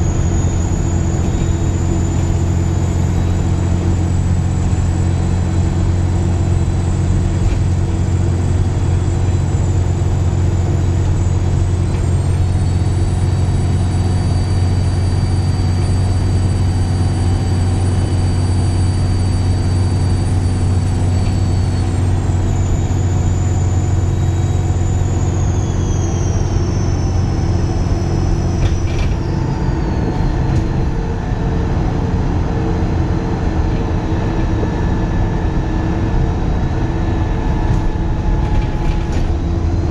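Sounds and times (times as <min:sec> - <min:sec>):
bus diesel engine drone: 0:00.0 - 0:39.9
high-pitched turbo whistle: 0:12.5 - 0:30.3.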